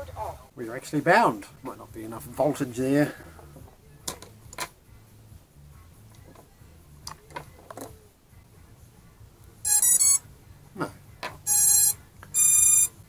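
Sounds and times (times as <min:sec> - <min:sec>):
buzzy electronic beep: 0:09.7 - 0:10.2, 0:11.5 - 0:13.0.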